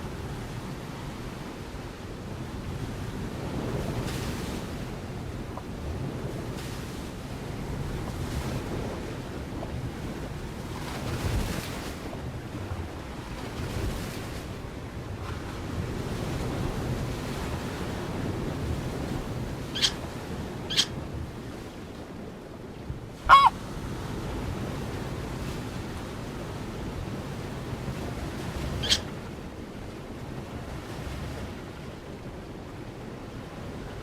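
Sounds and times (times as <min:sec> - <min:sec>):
wind: 0:00.0 - 0:34.0
high bird chirps: 0:23.3 - 0:23.5.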